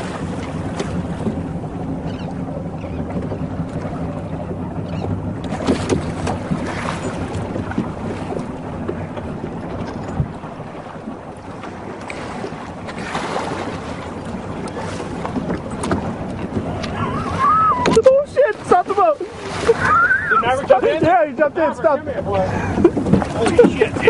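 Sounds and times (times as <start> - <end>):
wind on microphone: 0.0 - 18.0
boat motor running: 0.0 - 24.0.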